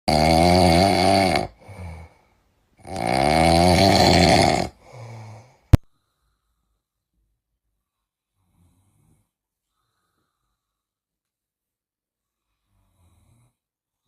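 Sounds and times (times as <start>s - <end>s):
puppy snoring: 0.1s - 1.9s, 2.8s - 4.8s.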